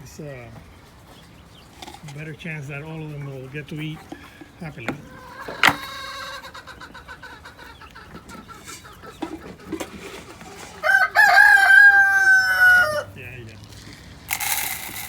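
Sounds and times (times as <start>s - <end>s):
chickens clucking: 0.0s - 15.0s
rooster crowing: 10.6s - 13.2s.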